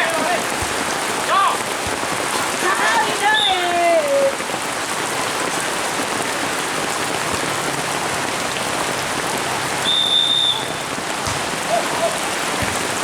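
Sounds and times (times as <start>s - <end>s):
heavy rain pouring: 0.0s - 13.0s
referee's whistle blast: 9.8s - 10.8s.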